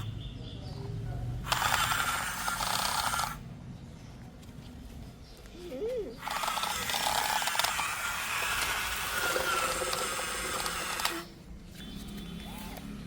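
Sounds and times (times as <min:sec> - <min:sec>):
mechanism clicking and rattling: 0:06.2 - 0:11.3.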